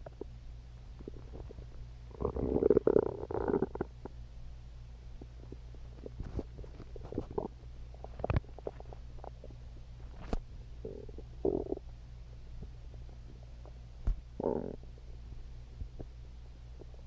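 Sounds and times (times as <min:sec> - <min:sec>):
steady low hum: 0:00.0 - 0:17.0
stomach growling: 0:01.0 - 0:04.1, 0:05.2 - 0:09.6, 0:10.2 - 0:11.9, 0:14.4 - 0:14.9.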